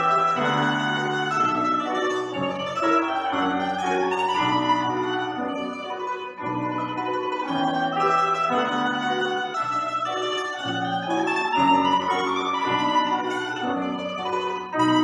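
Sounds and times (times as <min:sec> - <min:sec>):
domra folk melody: 0:00.0 - 0:15.0
piano accompaniment: 0:00.0 - 0:15.0.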